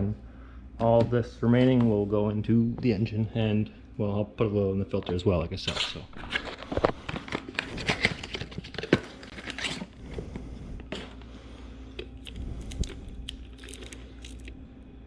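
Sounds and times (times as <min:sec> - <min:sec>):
cardboard box crinkling and tearing: 0:07.5 - 0:09.8.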